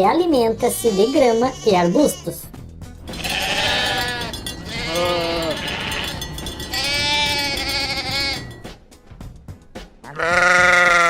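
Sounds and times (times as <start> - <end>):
goat bleating: 0.6 - 2.5, 3.1 - 8.6, 10.1 - 11.0.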